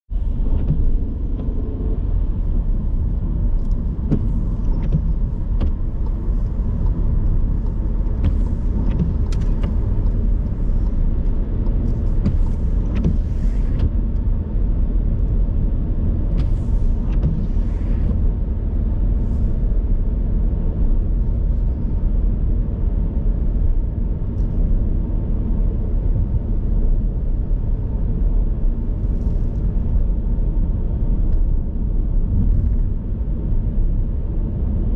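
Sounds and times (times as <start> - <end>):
car traffic rumble: 0.1 - 34.9.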